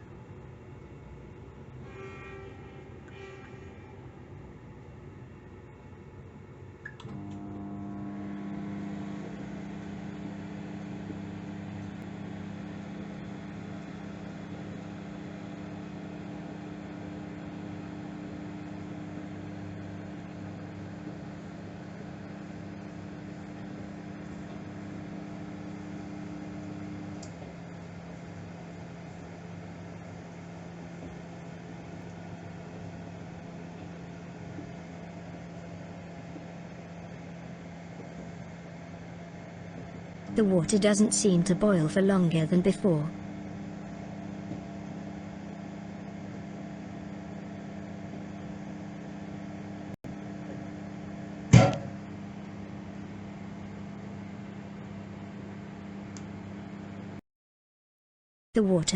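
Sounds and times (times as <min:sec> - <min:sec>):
microwave fan soft hum: 0:00.0 - 0:57.2
microwave humming buzz: 0:00.0 - 0:57.2
microwave switch click: 0:51.5 - 0:52.0.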